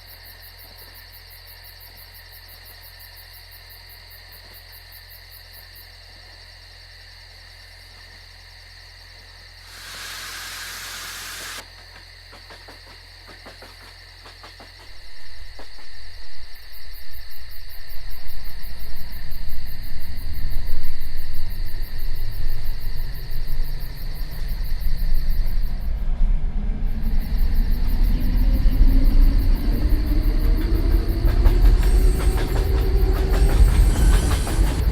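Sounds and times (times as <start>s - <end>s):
air hiss: 9.6s - 11.6s, 31.8s - 34.9s
train diesel engine rumble: 9.7s - 34.9s.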